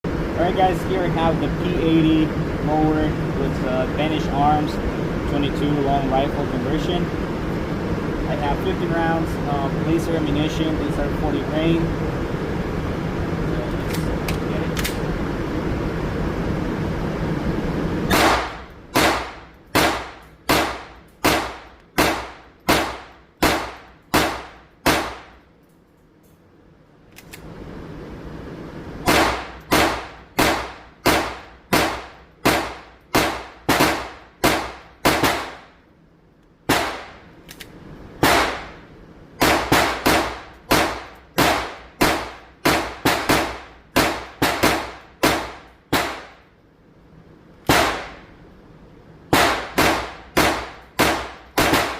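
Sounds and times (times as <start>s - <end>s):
pistol shots: 18.1s - 25.4s, 29.0s - 35.8s, 36.7s - 37.3s, 38.2s - 38.8s, 39.4s - 46.4s, 47.7s - 48.3s, 49.3s - 51.9s.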